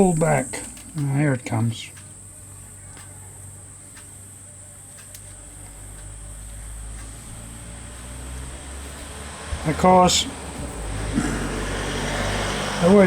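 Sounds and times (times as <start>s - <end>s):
faint handling clicks: 0.0s - 9.2s
high-pitched whine: 0.0s - 13.0s
low hum: 2.0s - 13.0s.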